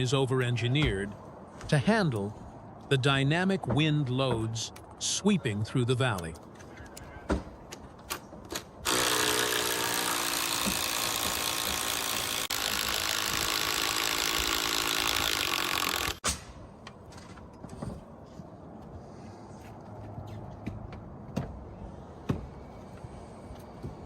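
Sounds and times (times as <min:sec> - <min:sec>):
power drill driving screw into wood: 0:08.8 - 0:16.2.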